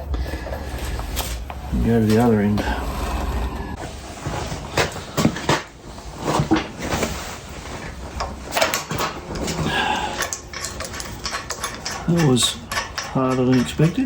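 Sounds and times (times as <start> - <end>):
hand tools clunking on metal: 8.2 - 14.0.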